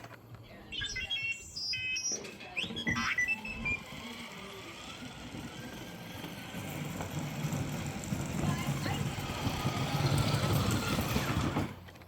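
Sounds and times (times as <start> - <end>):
electronic beeps and whistles: 0.5 - 4.0.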